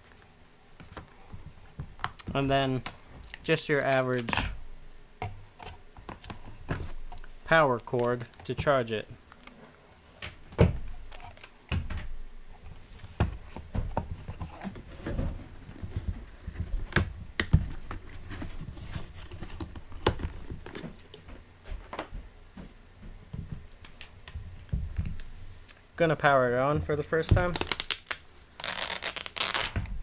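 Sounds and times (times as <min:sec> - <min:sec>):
packaging rustling: 0:27.2 - 0:29.8.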